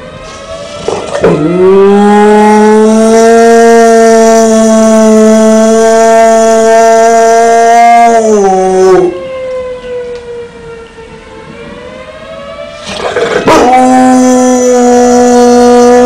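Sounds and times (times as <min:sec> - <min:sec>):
tornado siren wailing: 0:00.0 - 0:16.0
dog howling: 0:00.8 - 0:09.2, 0:12.8 - 0:16.0.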